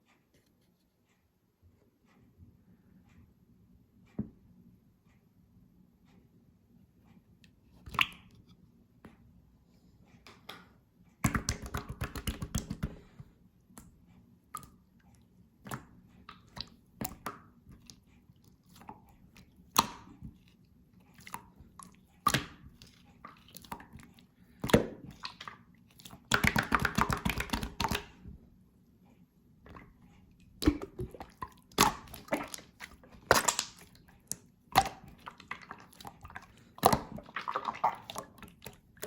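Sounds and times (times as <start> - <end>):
slime squished by hand: 21.2 - 28.2, 30.6 - 39.0.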